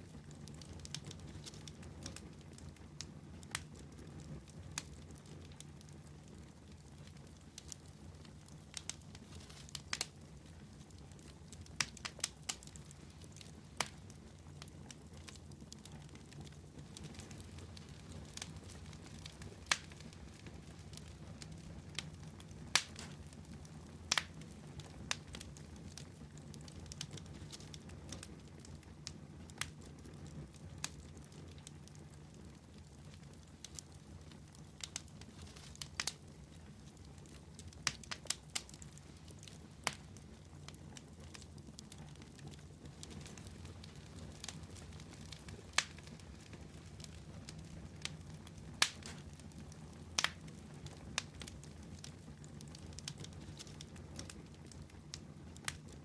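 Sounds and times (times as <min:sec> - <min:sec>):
campfire crackles and pops: 0:00.0 - 0:56.0
low rumble of flames: 0:00.0 - 0:56.0.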